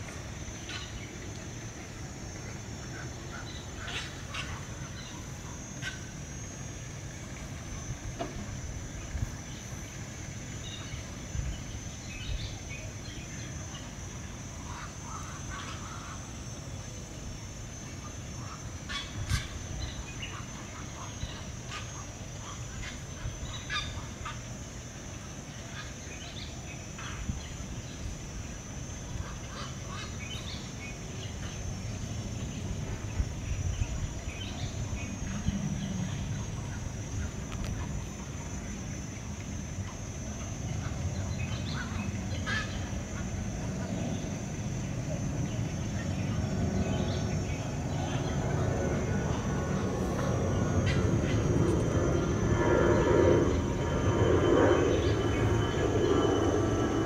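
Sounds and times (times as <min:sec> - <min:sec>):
high-pitched drone: 0:40.5 - 0:57.0
low rumble: 0:43.4 - 0:57.0.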